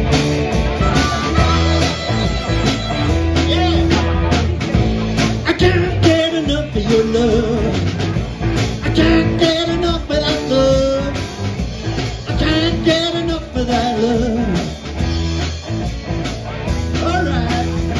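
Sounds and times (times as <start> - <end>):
bass and drums: 0.0 - 17.9
electric guitar: 0.0 - 17.9
person singing: 5.3 - 7.9, 8.8 - 11.2, 12.3 - 14.7.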